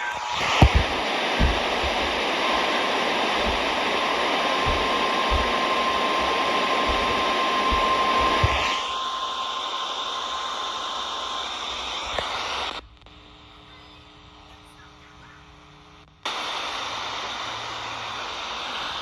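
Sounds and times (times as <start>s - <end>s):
radio static hiss: 0.0s - 8.8s, 11.1s - 19.0s
low thumps: 0.4s - 8.7s.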